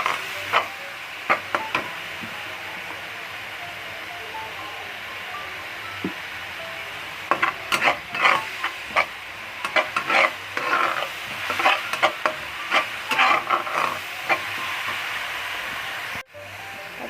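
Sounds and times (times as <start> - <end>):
spatula scraping a wok: 0.0 - 1.8, 7.3 - 15.7
paste sizzling in oil: 0.0 - 3.6, 5.6 - 16.8.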